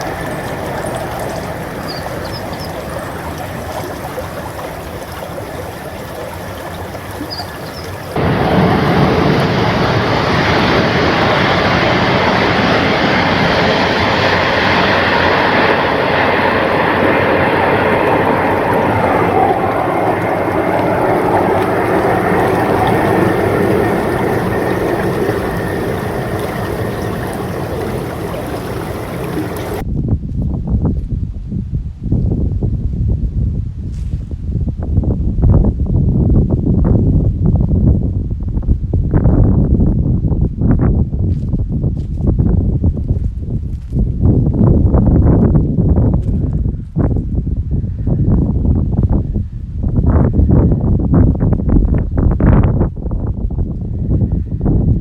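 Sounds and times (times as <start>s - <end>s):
high-speed train passing: 0.0s - 29.8s.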